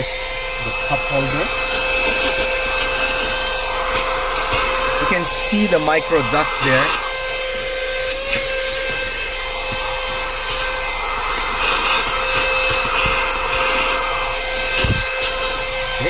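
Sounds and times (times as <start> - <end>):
handheld vacuum motor whine: 0.0 - 16.0.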